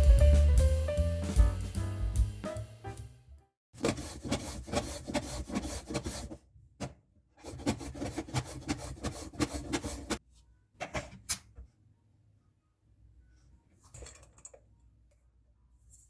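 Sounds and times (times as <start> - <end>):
carrot being grated: 3.8 - 6.3, 7.4 - 10.2.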